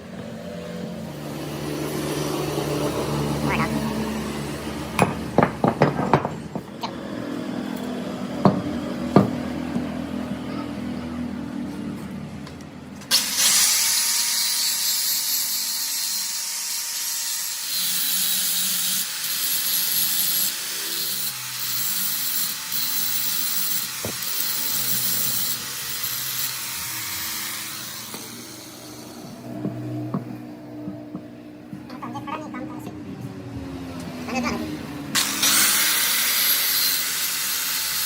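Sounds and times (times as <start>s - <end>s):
arc welding crackling hiss: 13.1s - 29.2s, 35.2s - 38.0s.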